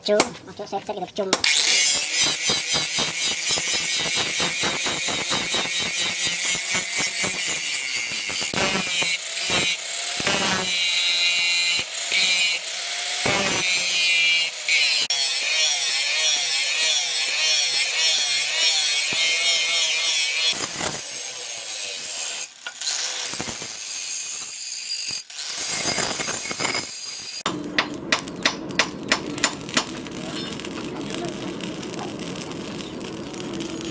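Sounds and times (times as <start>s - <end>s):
tool scraping metal: 1.4s - 12.6s, 13.2s - 30.8s
sharp knocks on metal: 27.5s - 29.9s.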